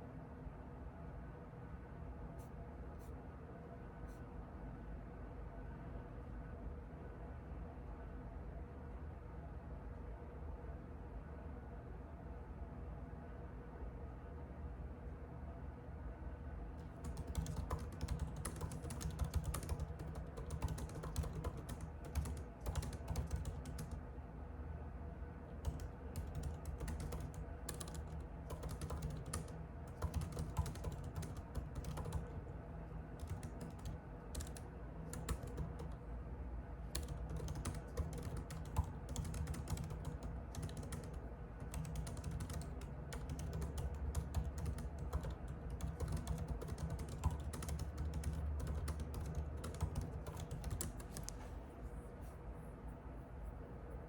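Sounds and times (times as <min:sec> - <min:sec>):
low steady hum: 0:00.0 - 0:54.0
typing on computer keyboard: 0:16.8 - 0:24.0, 0:25.6 - 0:32.4, 0:33.2 - 0:36.0, 0:36.9 - 0:51.4.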